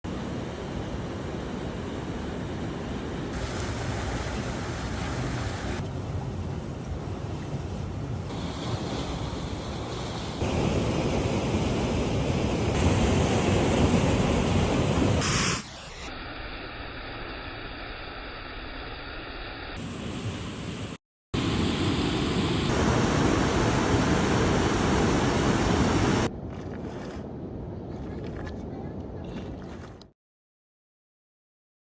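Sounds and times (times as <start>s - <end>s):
rushing river water: 3.3s - 15.0s.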